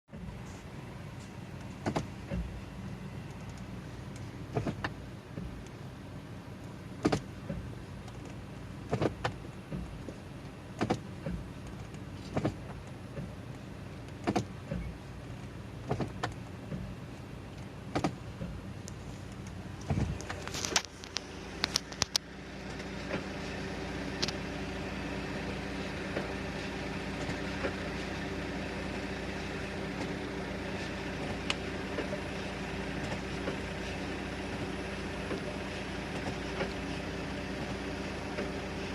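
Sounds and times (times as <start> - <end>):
transmission shift clunk: 0.1 - 5.8, 6.9 - 23.4, 29.8 - 30.4
car engine idling: 0.1 - 38.9.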